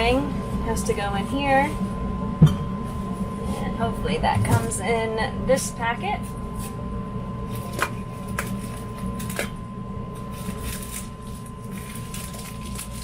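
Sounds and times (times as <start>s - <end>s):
steady low hum: 0.0s - 13.0s
packet crinkling and rustling: 7.5s - 13.0s.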